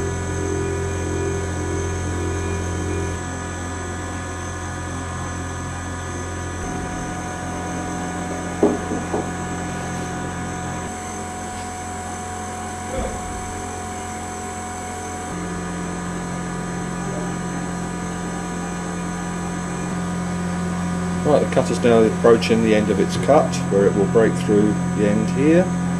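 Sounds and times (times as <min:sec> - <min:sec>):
milling machine cutting metal: 0:00.0 - 0:25.9
motor hum with steady tones: 0:00.0 - 0:25.9
faint knocks: 0:08.6 - 0:09.4.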